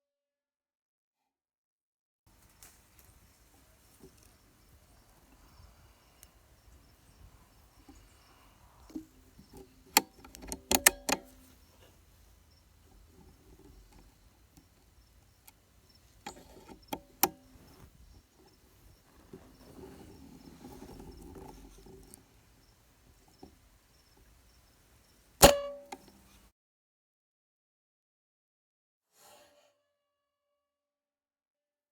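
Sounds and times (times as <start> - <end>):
soft rustle: 2.3 - 26.5
sharp clicks and knocks: 2.4 - 26.4
loud click with ring: 7.8 - 11.6, 25.4 - 26.4.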